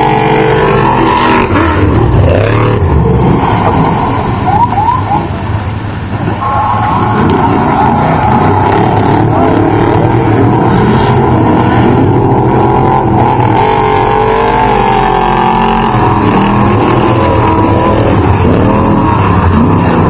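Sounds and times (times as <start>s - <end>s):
loud race truck engines revving: 0.0s - 20.0s.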